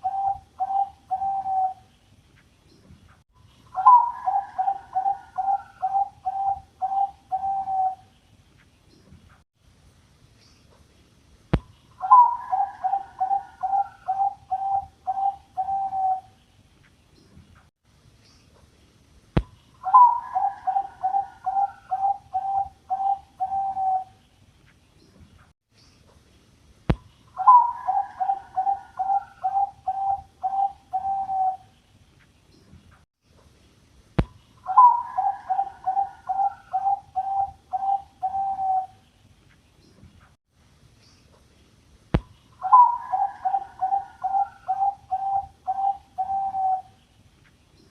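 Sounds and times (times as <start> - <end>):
dove cooing: 0.0 - 1.8, 3.7 - 8.1, 12.0 - 16.3, 19.8 - 24.2, 27.4 - 31.7, 34.6 - 39.0, 42.6 - 47.0.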